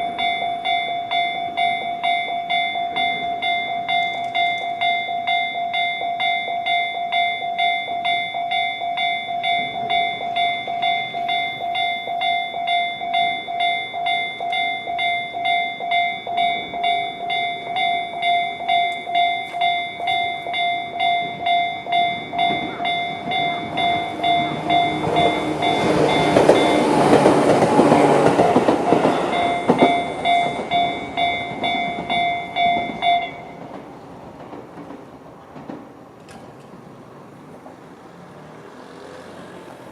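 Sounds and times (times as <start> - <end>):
level-crossing alarm bells: 0.0 - 34.0
electric train passing: 0.0 - 39.9.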